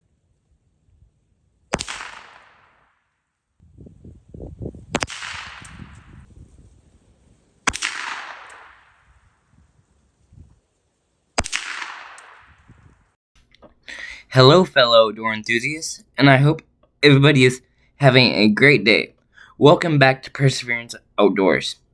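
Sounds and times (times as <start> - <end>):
rifle shots: 1.7 - 3.0, 4.9 - 6.2, 7.6 - 9.3, 11.4 - 12.9.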